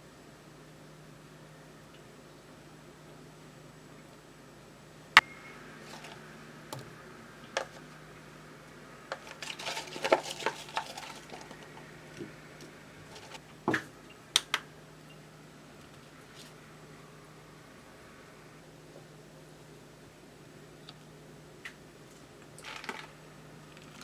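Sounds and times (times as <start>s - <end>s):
faint steady hum: 0.0s - 24.0s
small hard objects clattering: 9.2s - 11.7s, 22.6s - 23.1s.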